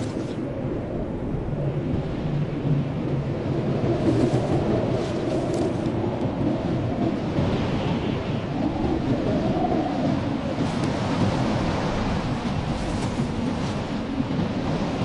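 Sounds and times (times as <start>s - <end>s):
blizzard wind blowing: 0.0s - 15.0s.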